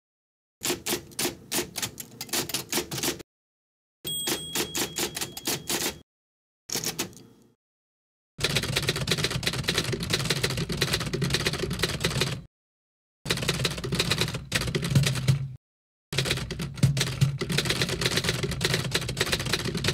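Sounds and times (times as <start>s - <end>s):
typewriter keys clacking: 4.1s - 6.0s, 6.7s - 7.2s, 16.2s - 19.9s.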